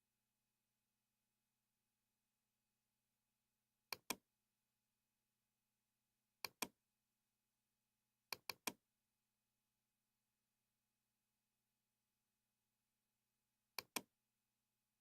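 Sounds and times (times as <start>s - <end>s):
computer mouse clicks: 3.9s - 4.2s, 6.4s - 6.8s, 8.3s - 8.8s, 13.8s - 14.1s.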